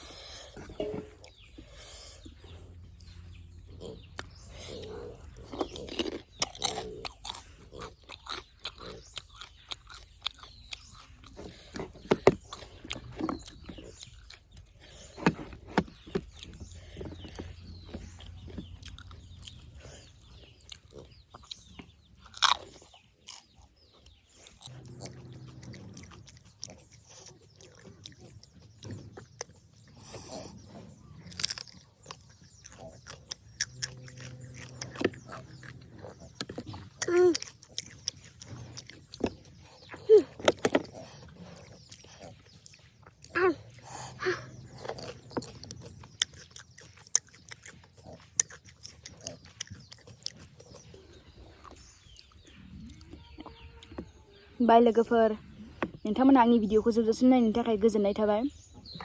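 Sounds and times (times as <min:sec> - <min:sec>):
slurping: 0:00.0 - 0:53.2
person chewing wet food: 0:00.0 - 0:54.6.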